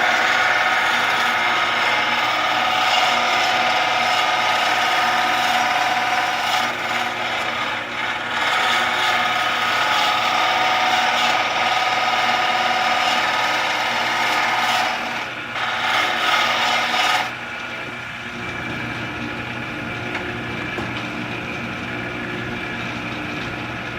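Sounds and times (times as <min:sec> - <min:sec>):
tool cutting wood hiss: 0:00.0 - 0:17.3
wood lathe motor hum: 0:00.0 - 0:23.9.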